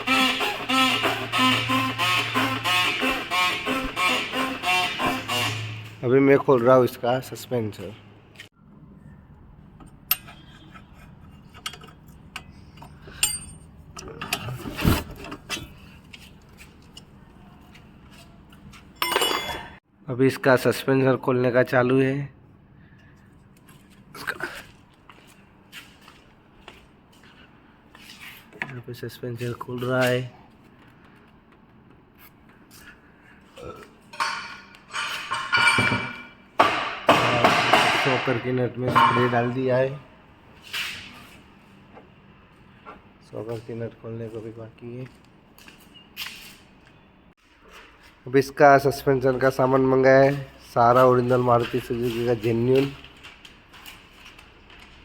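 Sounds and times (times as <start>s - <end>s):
metal clicks and knocks: 9.8s - 14.5s
metal tools clinking: 10.1s - 14.6s, 19.0s - 19.8s.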